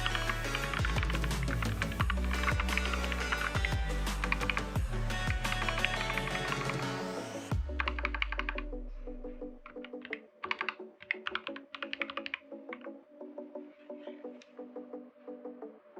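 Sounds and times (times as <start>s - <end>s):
mechanical keyboard typing: 0.0s - 4.8s, 5.6s - 6.8s, 7.8s - 8.6s, 9.6s - 12.9s
quiet background music: 0.0s - 15.9s.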